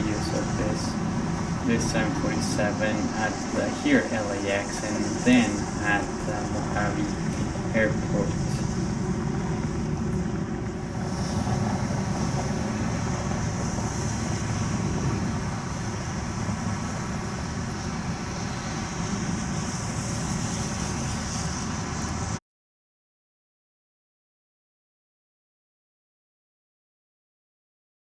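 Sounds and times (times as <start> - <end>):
low rumbling background noise: 0.0 - 22.4.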